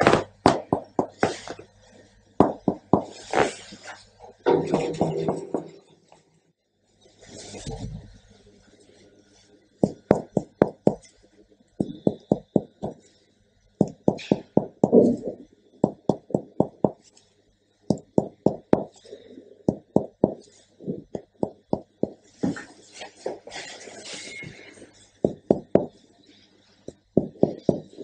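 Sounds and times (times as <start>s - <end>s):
fingertip tapping on chest: 15.8s - 17.0s, 26.9s - 28.0s.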